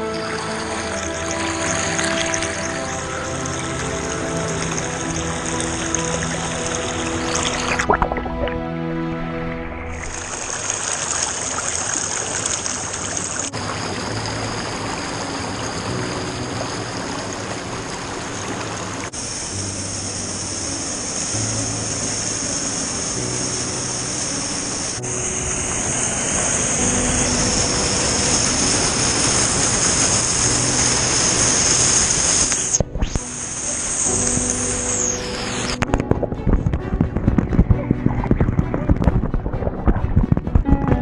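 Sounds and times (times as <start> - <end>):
waterfall rushing: 0.0 - 40.7
faint background music: 19.1 - 41.0.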